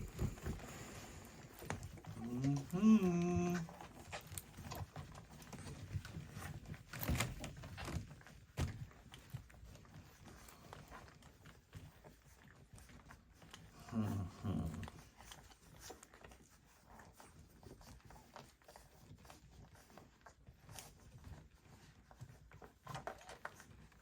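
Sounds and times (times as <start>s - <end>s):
dog low vocal sound: 0.0s - 4.9s, 13.4s - 16.0s
puppies rustling and scuffling: 0.0s - 24.0s.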